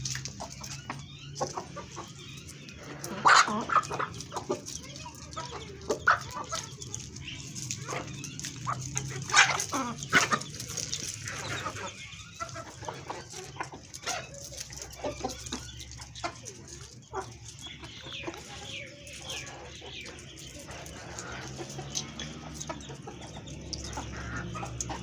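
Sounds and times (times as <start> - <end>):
chickens clucking: 0.0 - 25.0
chicken squawks: 2.8 - 6.7, 7.5 - 16.5.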